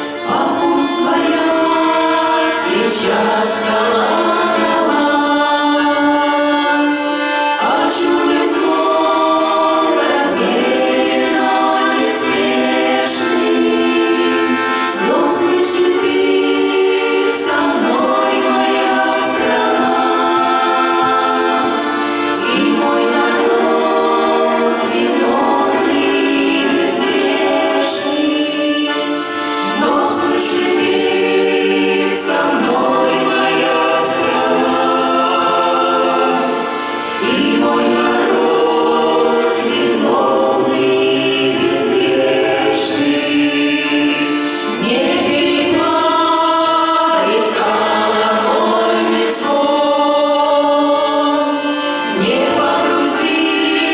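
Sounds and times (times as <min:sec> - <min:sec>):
vocal ensemble singing: 0:00.0 - 0:53.9.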